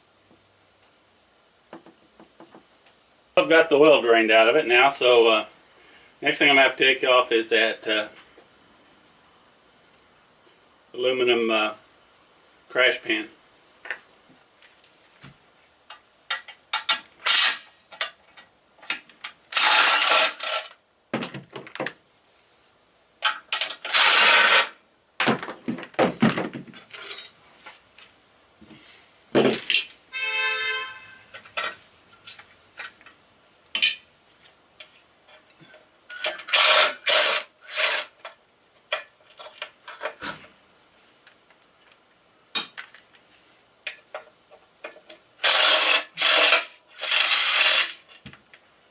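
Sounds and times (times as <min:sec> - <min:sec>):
ratchet spinning bursts: 0:19.5 - 0:20.7, 0:23.8 - 0:24.8, 0:36.4 - 0:38.2, 0:45.4 - 0:48.0.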